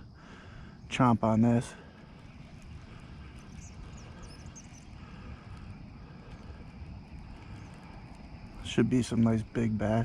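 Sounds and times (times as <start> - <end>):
faint high chirps: 3.3 - 5.0.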